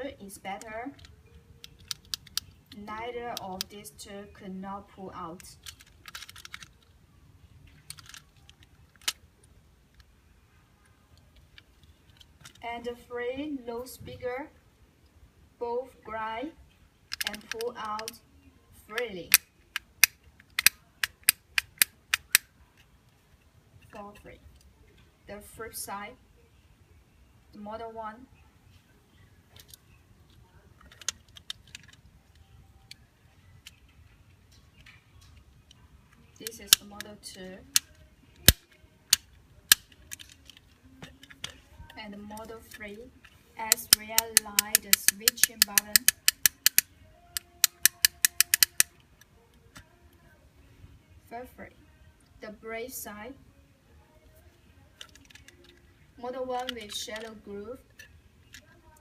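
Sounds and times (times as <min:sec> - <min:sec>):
plastic fidget cube clicks: 0:01.0 - 0:03.7, 0:05.6 - 0:06.9, 0:07.7 - 0:09.2, 0:17.1 - 0:18.2, 0:19.3 - 0:22.5, 0:30.8 - 0:33.0, 0:37.7 - 0:42.0, 0:43.6 - 0:49.0, 0:55.0 - 0:55.9, 0:56.6 - 0:57.4
plastic toggle switch clicks: 0:47.4 - 0:48.9.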